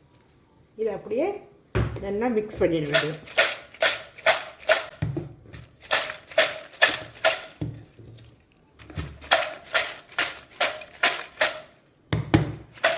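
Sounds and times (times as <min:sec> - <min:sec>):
chips shaken in a vessel: 0:02.8 - 0:05.0, 0:05.7 - 0:07.6, 0:08.2 - 0:11.8.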